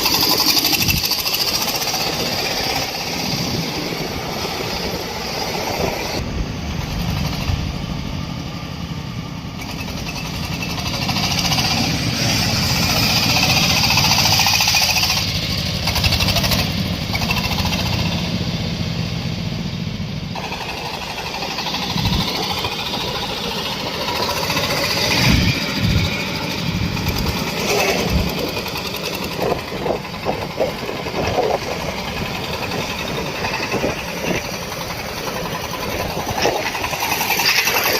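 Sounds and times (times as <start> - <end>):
corn sheller rapid rattling: 0.0 - 3.8, 9.6 - 18.1, 20.4 - 37.9
engine rumble: 0.0 - 37.9.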